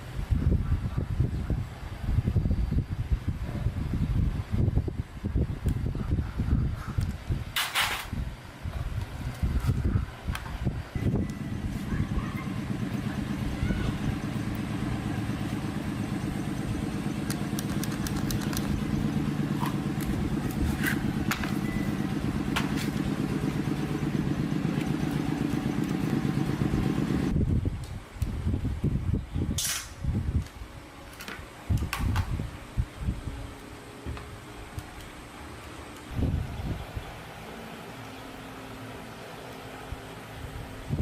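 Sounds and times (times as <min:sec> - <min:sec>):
small engine running: 0:11.1 - 0:27.4.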